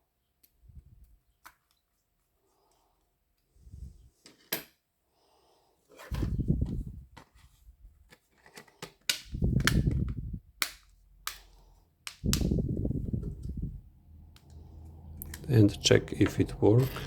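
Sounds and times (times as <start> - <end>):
sharp clicks and snaps: 9.1 - 13.6, 14.3 - 15.5
low rumbling: 12.2 - 17.0.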